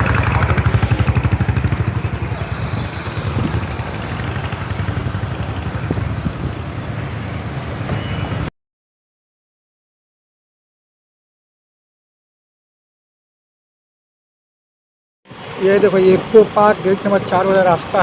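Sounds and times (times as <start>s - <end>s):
motorcycle engine rumbling: 0.0s - 8.5s.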